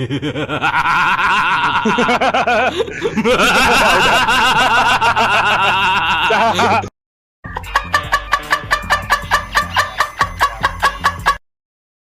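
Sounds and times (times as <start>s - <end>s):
rapid snickering laughter: 0.0s - 6.9s, 7.6s - 11.4s
short rhythmic notes: 7.5s - 11.4s.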